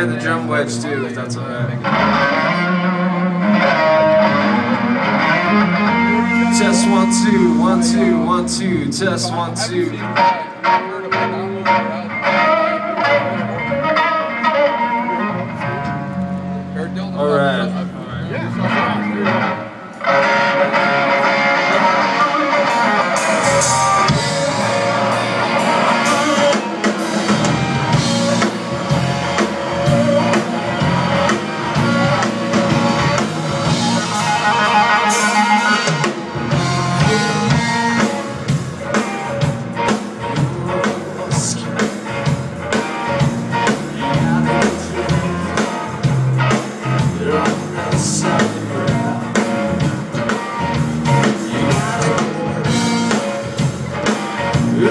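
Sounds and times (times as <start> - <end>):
electric guitar: 0.0 - 54.9
live blues rock band: 0.0 - 54.9
drum kit: 3.4 - 10.8, 20.2 - 54.9.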